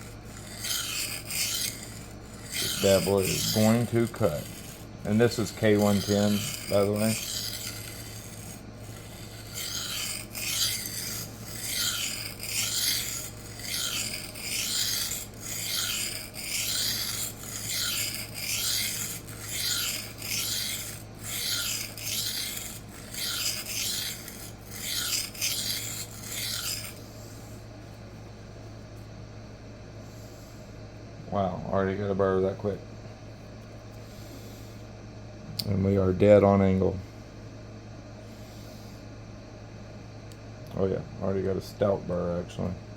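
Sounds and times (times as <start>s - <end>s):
knife rasping on sharpening plate: 0.0s - 27.0s.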